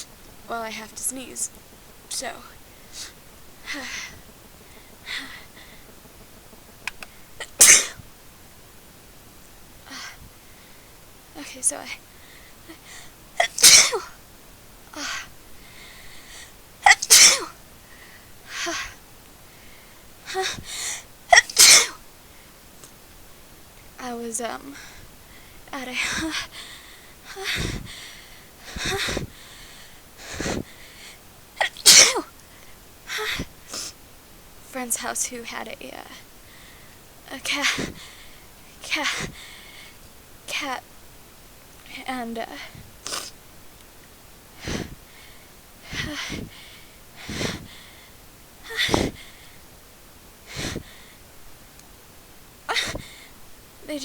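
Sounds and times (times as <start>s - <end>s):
person's sharp catching breaths: 2.6s - 6.0s, 12.0s - 14.1s, 15.0s - 21.1s, 24.6s - 34.0s, 36.2s - 40.1s, 44.6s - 49.7s, 50.4s - 51.3s, 52.7s - 53.4s
woman sneezing: 7.4s - 8.0s, 13.4s - 14.1s, 16.8s - 17.6s, 21.3s - 22.0s, 31.6s - 32.3s, 48.7s - 49.2s, 52.7s - 53.1s.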